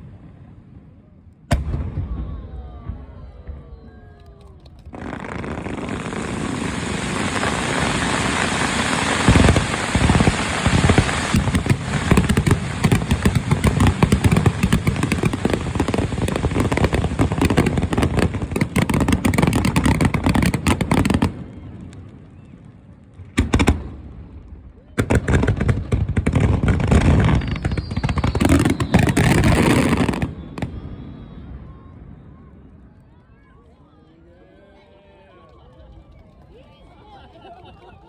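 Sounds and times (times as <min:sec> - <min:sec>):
fireworks crackling and bangs: 0:00.0 - 0:33.3
fireworks hissing rush: 0:04.9 - 0:22.2, 0:25.0 - 0:31.1.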